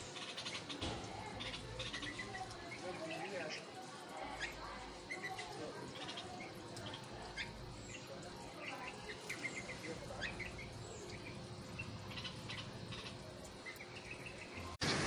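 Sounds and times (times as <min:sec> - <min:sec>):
fledgling bird chirping: 0:04.3 - 0:14.8.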